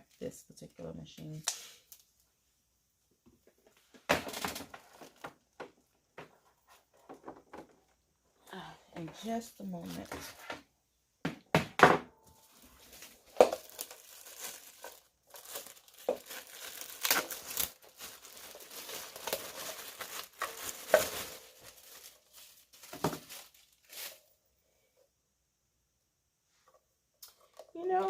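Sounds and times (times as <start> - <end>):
packaging crinkling and rustling: 4.2 - 7.8, 12.4 - 24.3.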